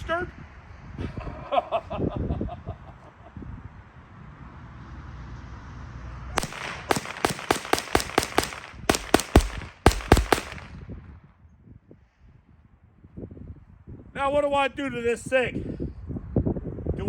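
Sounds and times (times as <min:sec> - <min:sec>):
pistol gunfire bursts: 0:06.4 - 0:10.9.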